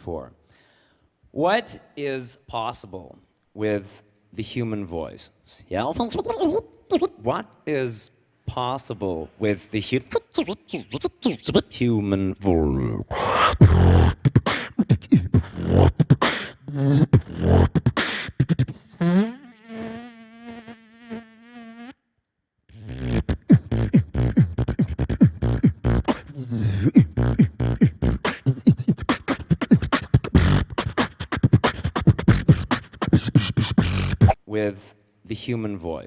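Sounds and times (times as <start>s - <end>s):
beatboxing: 5.9s - 7.2s, 10.0s - 22.0s, 22.7s - 34.5s.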